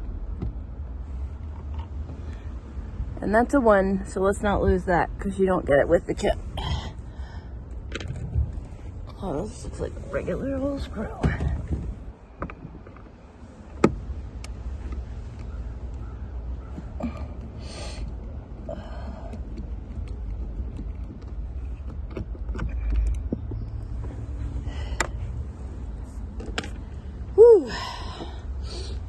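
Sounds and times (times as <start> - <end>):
low steady rumble: 0.0 - 29.0.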